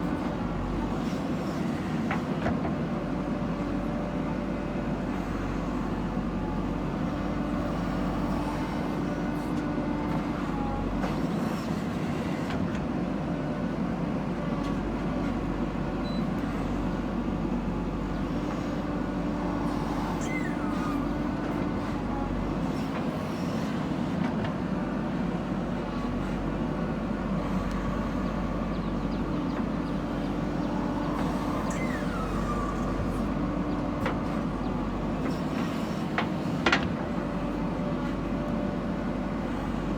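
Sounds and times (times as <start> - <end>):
backhoe diesel engine drone: 0.0 - 39.9
brief squeaks: 20.2 - 21.0, 31.2 - 33.0.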